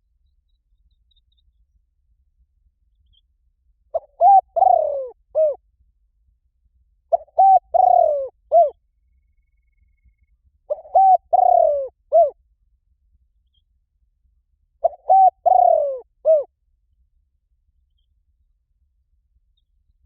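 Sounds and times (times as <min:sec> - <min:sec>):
dove cooing: 0:03.9 - 0:05.6, 0:07.1 - 0:08.8, 0:10.7 - 0:12.4, 0:14.8 - 0:16.5.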